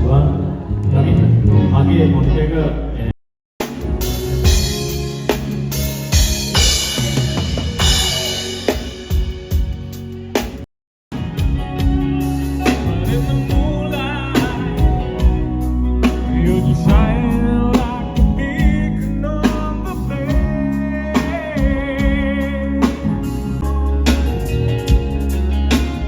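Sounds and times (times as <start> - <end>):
bass: 0.0 - 26.0
guitar: 0.0 - 26.0
drum kit steady beat: 3.6 - 26.0
person singing with vibrato: 12.6 - 23.4.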